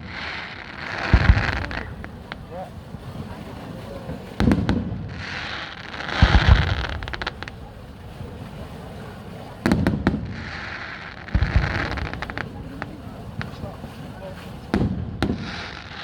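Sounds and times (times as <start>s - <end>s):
firework bangs and crackling: 0.0s - 16.0s
firework hiss: 0.0s - 16.0s.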